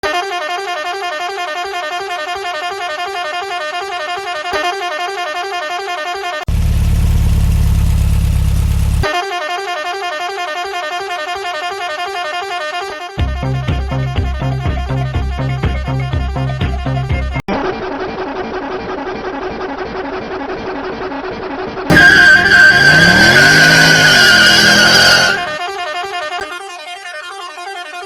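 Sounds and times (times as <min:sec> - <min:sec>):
warbling vehicle horn: 0:00.0 - 0:06.5, 0:09.0 - 0:13.2, 0:21.9 - 0:26.5.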